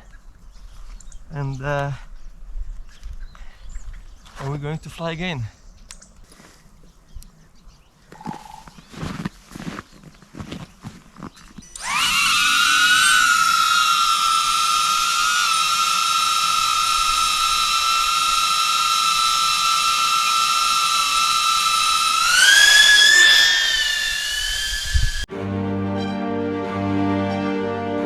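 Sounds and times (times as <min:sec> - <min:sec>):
drone propellers whining: 0:11.8 - 0:28.0.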